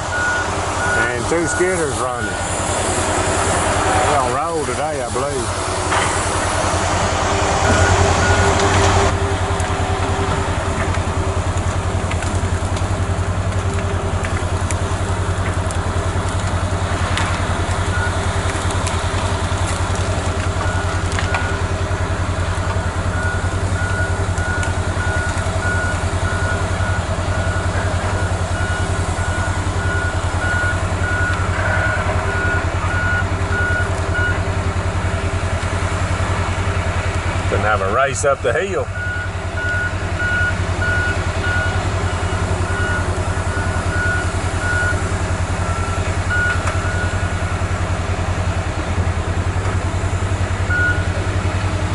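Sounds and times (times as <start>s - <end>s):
loud hiss: 0.0s - 9.2s
heavy diesel machinery running: 0.0s - 51.9s
backup alarm beeping: 0.1s - 2.6s, 7.6s - 8.7s, 22.8s - 34.6s, 38.8s - 47.4s, 50.7s - 51.2s.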